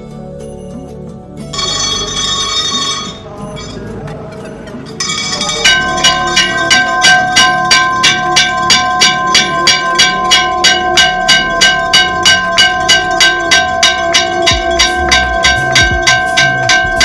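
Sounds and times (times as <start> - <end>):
metal temple bell struck: 5.0 - 17.0.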